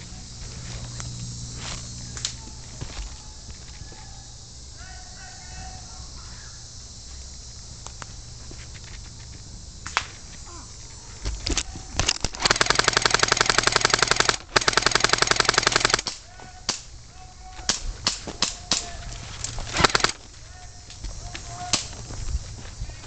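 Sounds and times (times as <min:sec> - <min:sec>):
airsoft rifle shots: 0:12.0 - 0:16.9, 0:19.7 - 0:20.2.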